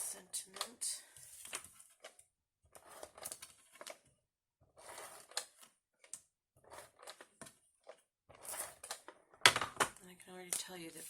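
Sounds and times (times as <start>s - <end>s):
paper and card rustling: 0.6s - 2.2s.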